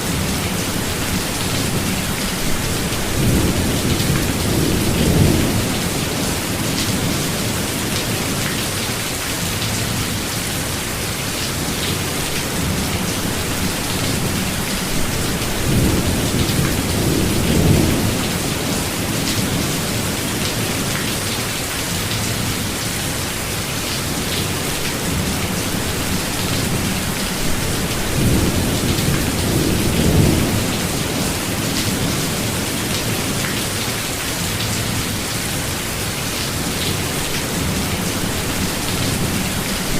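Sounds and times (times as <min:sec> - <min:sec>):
heavy rain: 0:00.0 - 0:39.9
thunder rumbling: 0:01.0 - 0:08.2, 0:12.6 - 0:20.6, 0:25.0 - 0:32.8.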